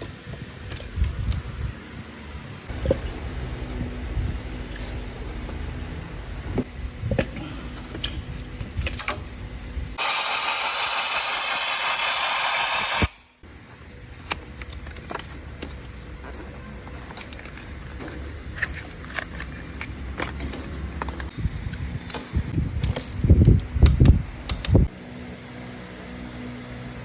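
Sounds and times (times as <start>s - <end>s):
loud high hiss of air: 10.0s - 13.4s.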